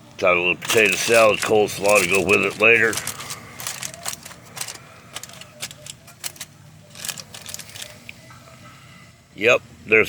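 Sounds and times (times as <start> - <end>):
food crackling on a grill: 0.6 - 8.2.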